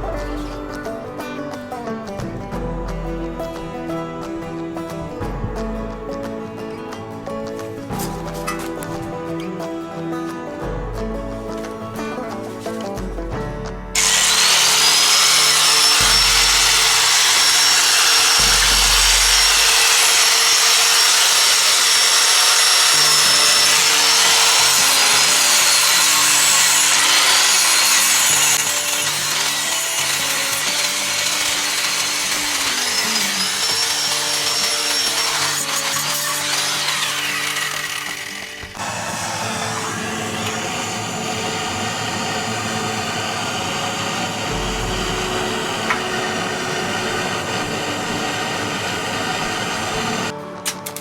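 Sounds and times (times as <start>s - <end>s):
background music: 0.0s - 51.0s
power tool whining: 13.9s - 51.0s.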